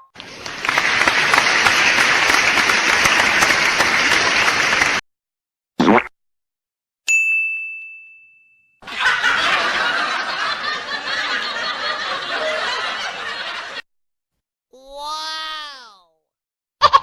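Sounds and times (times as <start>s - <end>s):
crowd laughter: 0.3s - 5.0s, 8.8s - 13.8s
bright bell ding: 7.1s - 8.8s.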